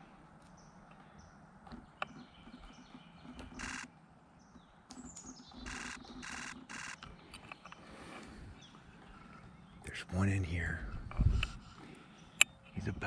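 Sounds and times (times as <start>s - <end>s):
faint bird calls: 0.0s - 13.0s
camera shutter clicks: 3.5s - 3.9s, 5.6s - 7.0s.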